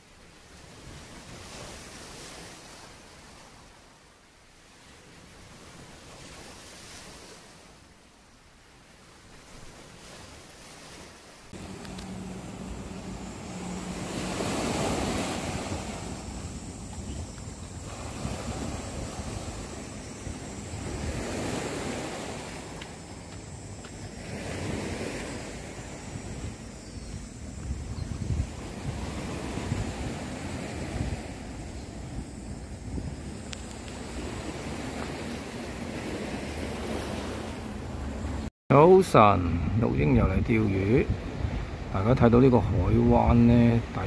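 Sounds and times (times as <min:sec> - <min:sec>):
sea waves washing on shore: 0:00.0 - 0:44.0
wind buffeting microphone: 0:11.5 - 0:38.5, 0:39.4 - 0:44.0.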